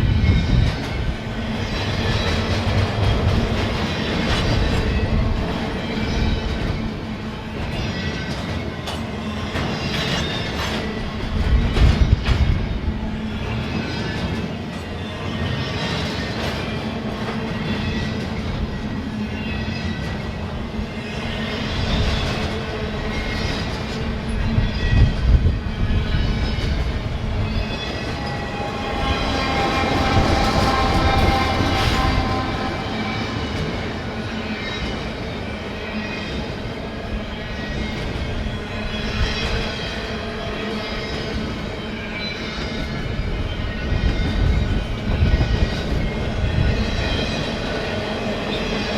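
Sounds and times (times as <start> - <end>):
train wheel-on-rail rumble: 0.0 - 48.9
high whine: 26.6 - 35.4.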